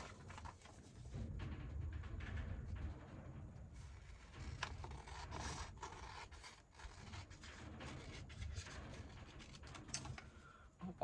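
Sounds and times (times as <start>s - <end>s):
paper rubbing and crinkling: 0.0s - 1.0s, 4.0s - 10.2s.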